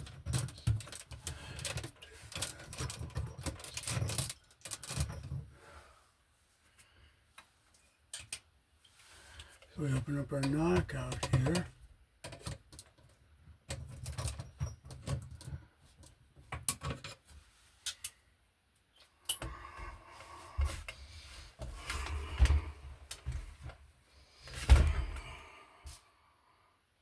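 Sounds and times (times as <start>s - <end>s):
metal clicks taps and scrapes: 7.4s - 9.7s, 17.8s - 18.2s.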